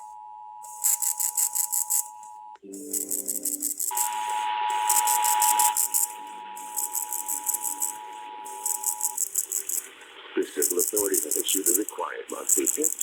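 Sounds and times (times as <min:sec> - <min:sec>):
two-tone alert signal: 0:00.0 - 0:09.8
high-pitched rhythmic rattle: 0:00.6 - 0:13.0.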